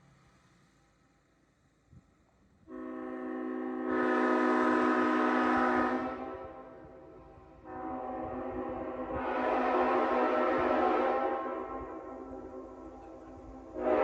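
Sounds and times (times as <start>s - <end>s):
locomotive air horn blast: 2.7s - 14.0s.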